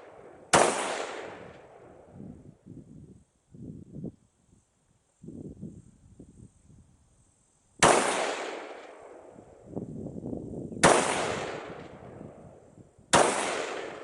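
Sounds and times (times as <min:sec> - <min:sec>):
rifle shots echoing: 0:00.0 - 0:02.0, 0:07.8 - 0:09.3, 0:10.8 - 0:12.0, 0:13.1 - 0:14.0.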